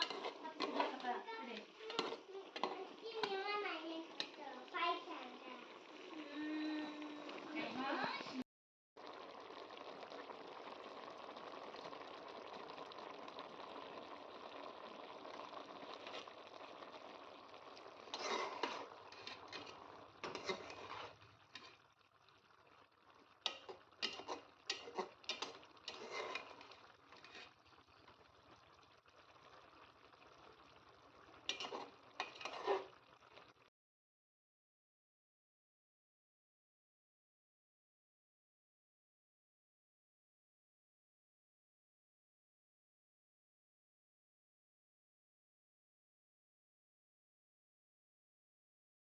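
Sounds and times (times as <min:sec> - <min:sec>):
food bubbling and hissing: 0:00.0 - 0:08.4, 0:09.0 - 0:33.7.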